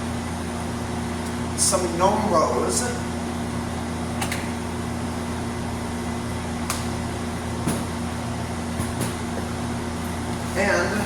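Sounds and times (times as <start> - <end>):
kitchen fan humming: 0.0 - 11.0.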